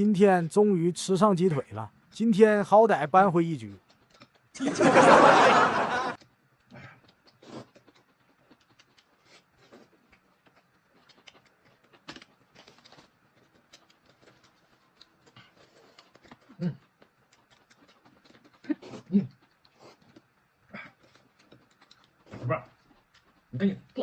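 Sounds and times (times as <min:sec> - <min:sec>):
small wet clicks: 0:06.2 - 0:18.7, 0:19.3 - 0:24.0
person chewing and lip-smacking: 0:06.2 - 0:24.0.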